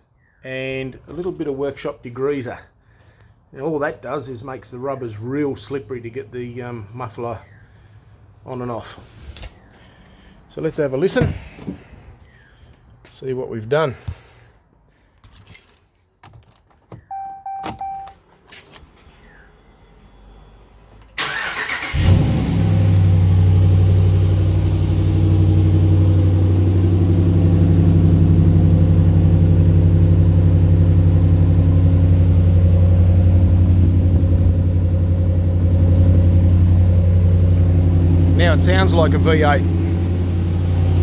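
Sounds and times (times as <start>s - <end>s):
short beep: 17.1s - 18.2s
engine idling deeply: 22.0s - 41.0s.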